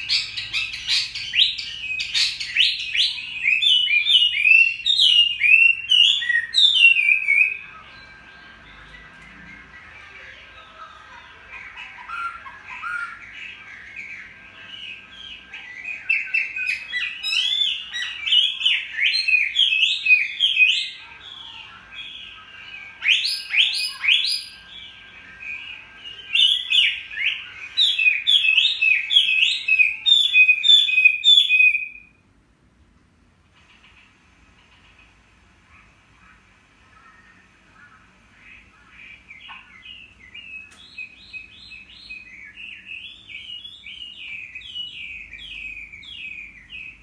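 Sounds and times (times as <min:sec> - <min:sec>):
bird singing whistled phrases: 0:00.0 - 0:09.2, 0:25.5 - 0:32.2.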